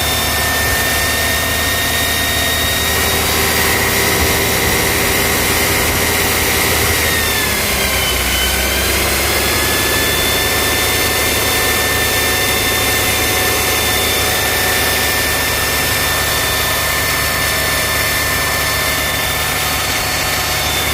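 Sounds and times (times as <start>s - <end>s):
car engine running: 0.0s - 20.9s
thin high whistle: 6.8s - 20.9s.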